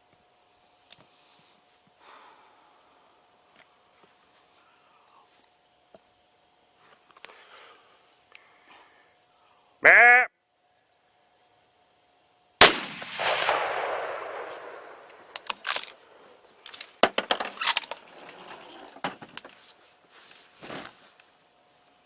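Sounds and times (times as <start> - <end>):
rifle shot echoing: 12.6 - 15.5.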